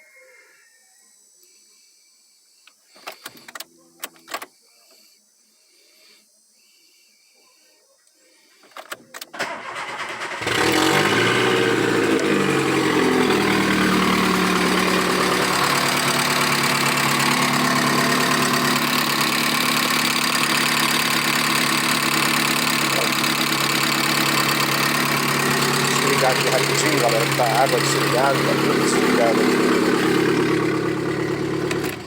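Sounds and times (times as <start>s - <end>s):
car engine starting and idling: 9.3s - 32.0s
clicks: 31.6s - 32.0s.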